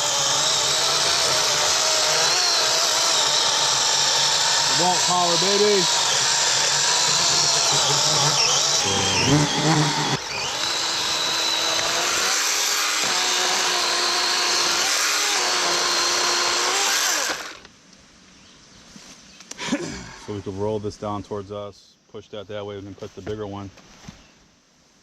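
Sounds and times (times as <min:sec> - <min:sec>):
electric chainsaw cutting wood: 0:00.0 - 0:17.7.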